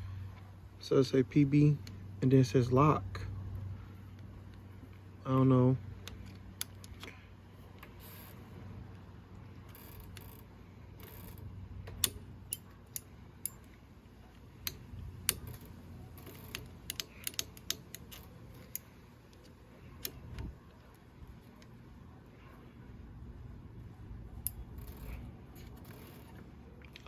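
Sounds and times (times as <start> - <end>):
faint low hum: 0.0 - 27.0
brake lever clicks and rattles: 14.6 - 20.6.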